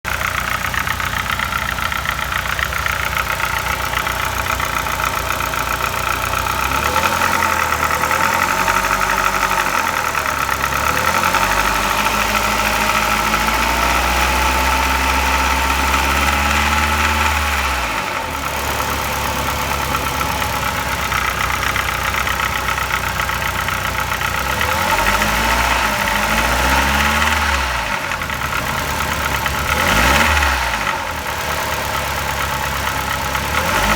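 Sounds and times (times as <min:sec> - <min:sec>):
petrol engine idling with knock: 0:00.0 - 0:10.8.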